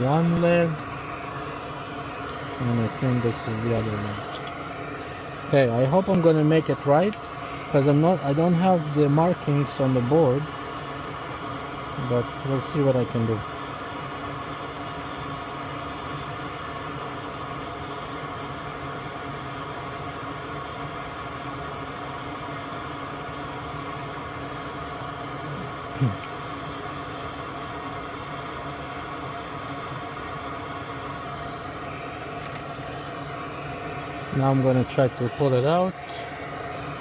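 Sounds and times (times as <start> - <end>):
small fan humming: 0.0 - 37.0.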